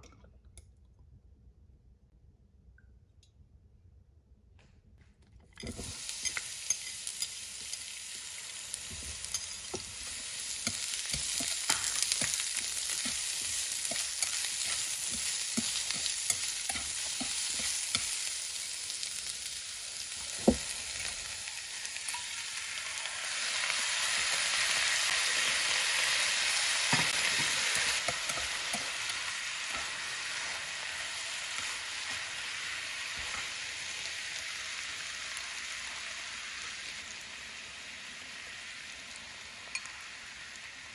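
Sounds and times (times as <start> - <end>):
food sizzling in hot oil: 5.6 - 40.9.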